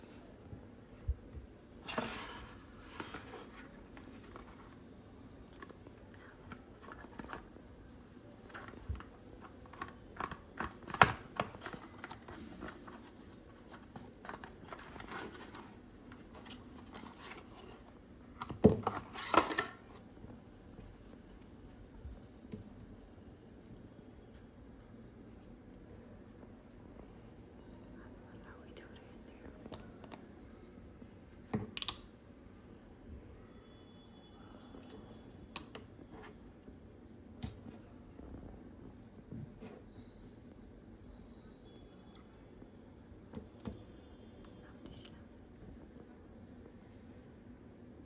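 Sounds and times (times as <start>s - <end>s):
packaging rustling and scraping: 1.8s - 4.8s, 6.4s - 7.6s, 8.4s - 20.1s.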